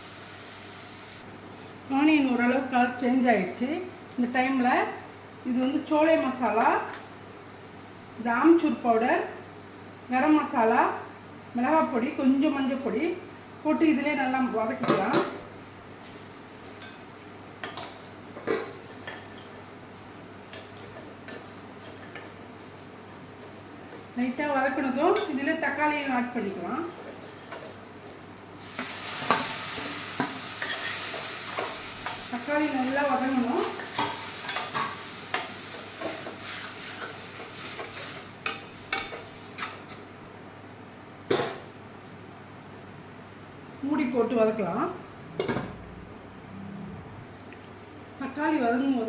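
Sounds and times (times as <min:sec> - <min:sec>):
food frying in a pan: 0:00.0 - 0:01.3, 0:15.0 - 0:40.9
spoon scraping a pan: 0:20.5 - 0:22.8, 0:26.4 - 0:27.8, 0:28.8 - 0:40.0.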